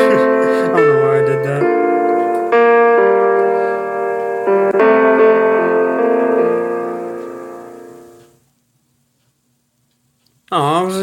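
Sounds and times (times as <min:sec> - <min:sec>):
calm piano chords: 0:00.0 - 0:08.5.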